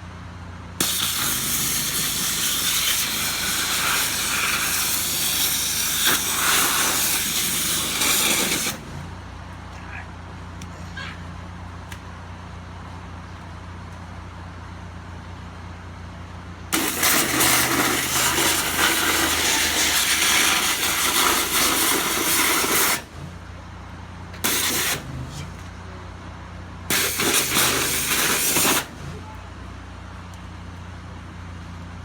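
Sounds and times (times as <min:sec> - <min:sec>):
high-pressure water jet hissing: 0:00.8 - 0:09.0, 0:16.7 - 0:23.3, 0:24.4 - 0:25.6, 0:26.9 - 0:29.3
pressure washer motor humming: 0:00.8 - 0:09.6, 0:16.7 - 0:23.6, 0:24.3 - 0:26.0, 0:26.8 - 0:29.6.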